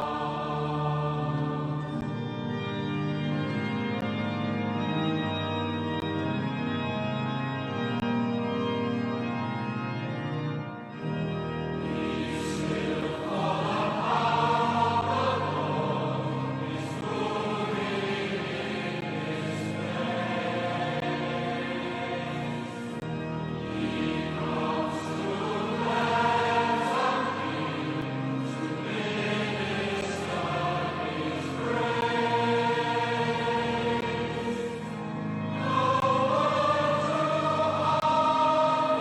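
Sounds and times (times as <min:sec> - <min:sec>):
voices singing: 0:00.0 - 0:02.1, 0:11.9 - 0:39.0
organ chords: 0:00.0 - 0:39.0.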